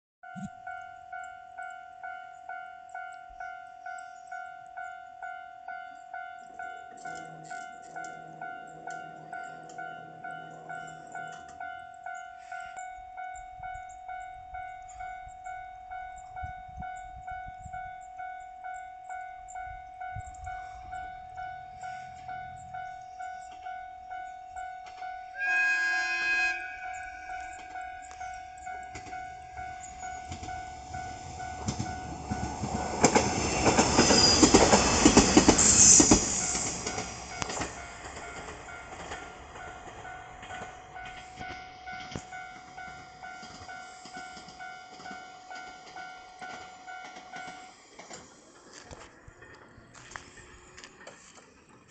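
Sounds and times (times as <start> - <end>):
level crossing bell ringing: 0.2 - 33.1, 36.5 - 47.8
train horn: 25.3 - 30.5
train wheels clacking: 26.5 - 51.9.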